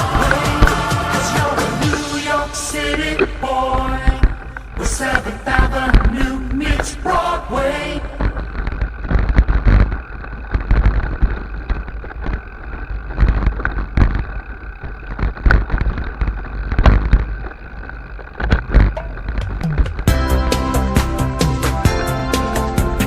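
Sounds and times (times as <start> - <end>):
bike knocks and rattles: 18.4 - 20.1.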